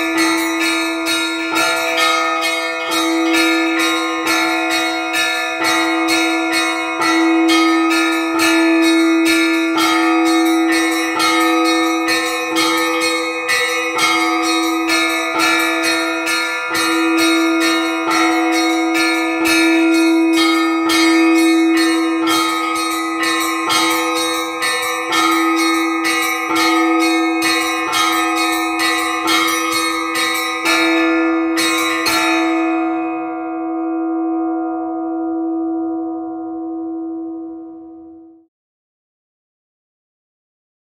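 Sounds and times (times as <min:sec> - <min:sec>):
church bells striking: 0:00.0 - 0:38.3.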